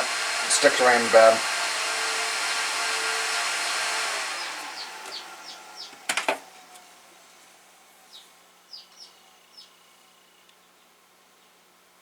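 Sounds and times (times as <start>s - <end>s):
server fans winding down: 0.0s - 8.2s
bird chirping: 4.4s - 7.4s, 8.0s - 11.6s.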